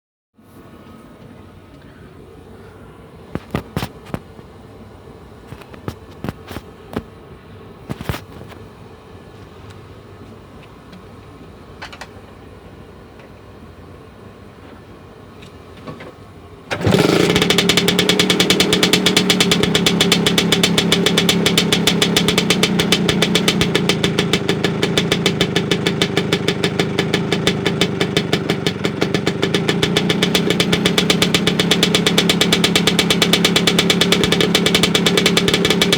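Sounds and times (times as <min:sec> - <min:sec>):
scooter engine idling: 0:16.8 - 0:35.9.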